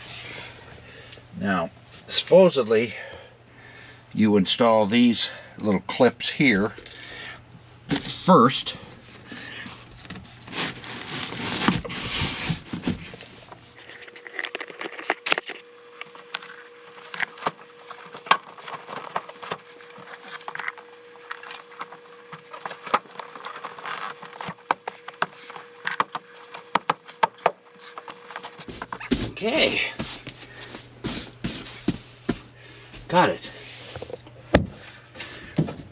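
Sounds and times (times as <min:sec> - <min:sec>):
rustling: 0:13.4 - 0:29.2
faint steady hum: 0:13.4 - 0:29.3.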